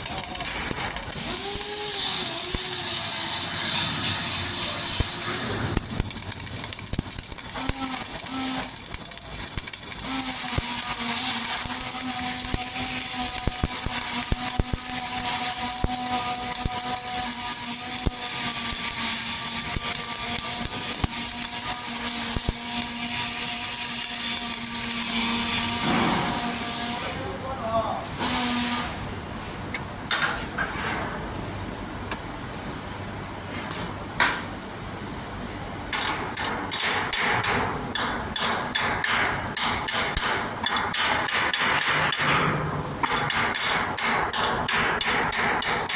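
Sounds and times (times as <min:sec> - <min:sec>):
welding crackling sizzle: 0:00.0 - 0:29.0.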